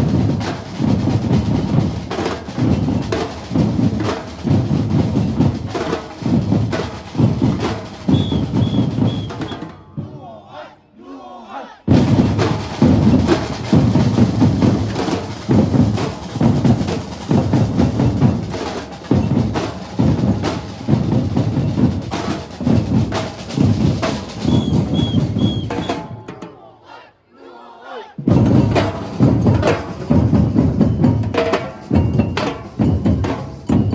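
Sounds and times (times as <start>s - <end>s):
drum ensemble playing: 0.0s - 10.3s, 11.9s - 27.0s, 27.9s - 33.9s
voices: 10.0s - 11.9s, 26.3s - 28.2s.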